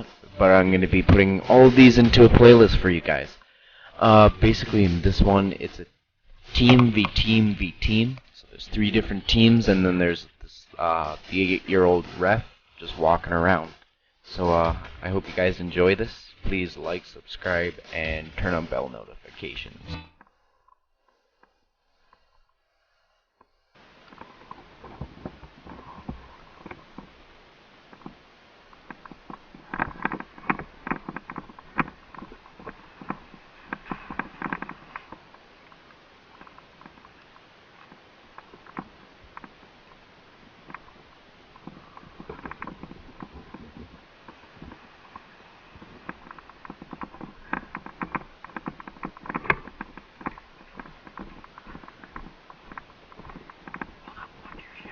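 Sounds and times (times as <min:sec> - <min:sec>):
steady hiss: 0:00.0 - 0:19.8, 0:21.0 - 0:54.9
airsoft clicks and knocks: 0:06.6 - 0:07.3, 0:23.4 - 0:27.2, 0:27.8 - 0:40.0, 0:40.6 - 0:54.9
footsteps: 0:23.4 - 0:54.9.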